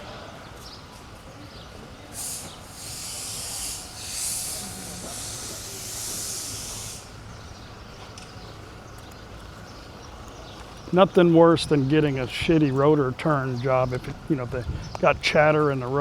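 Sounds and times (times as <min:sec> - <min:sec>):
air hissing: 0:02.1 - 0:07.4.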